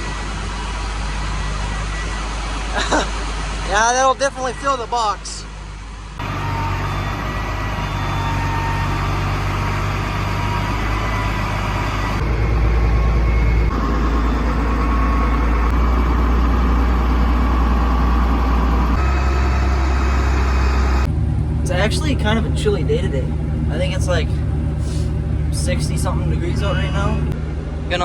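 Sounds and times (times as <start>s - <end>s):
combine harvester engine rumbling: 0.0s - 28.0s.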